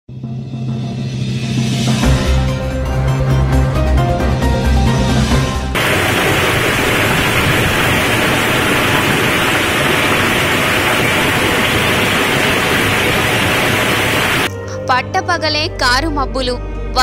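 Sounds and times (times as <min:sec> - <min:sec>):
music: 0:00.1 - 0:05.8, 0:14.5 - 0:17.0
heavy rain downpour: 0:05.8 - 0:14.5.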